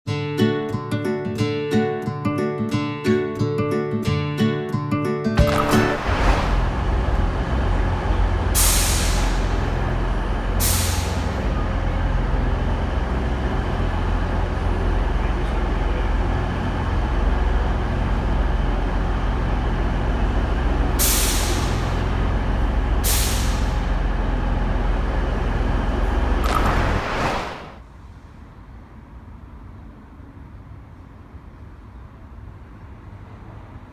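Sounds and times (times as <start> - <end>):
diesel train engine idling: 6.7 - 26.5
sharp hisses of released air: 8.6 - 9.8, 10.6 - 11.4, 21.0 - 22.1, 23.0 - 23.9.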